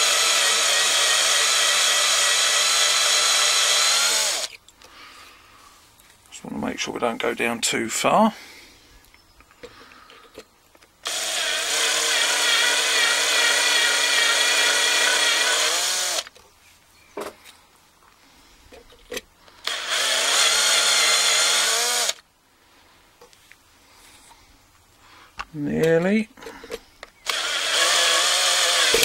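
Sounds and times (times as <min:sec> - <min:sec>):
electric drill drilling metal: 0:00.0 - 0:04.6, 0:11.0 - 0:16.3, 0:19.6 - 0:22.2, 0:27.2 - 0:29.0.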